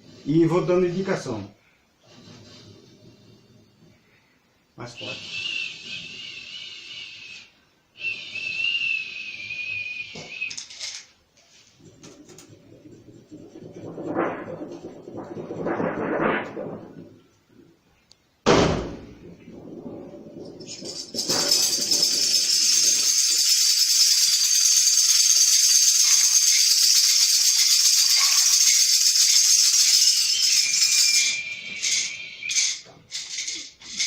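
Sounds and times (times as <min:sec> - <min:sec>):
brass sheet thunder crash: 0:13.2 - 0:17.3, 0:18.4 - 0:23.1
tambourines shaking: 0:20.6 - 0:34.0.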